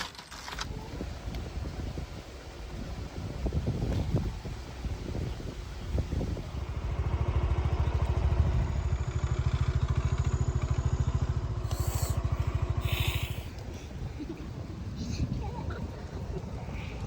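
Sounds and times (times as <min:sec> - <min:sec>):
scooter engine running: 0:03.2 - 0:17.0
hissy bursts: 0:11.6 - 0:13.7.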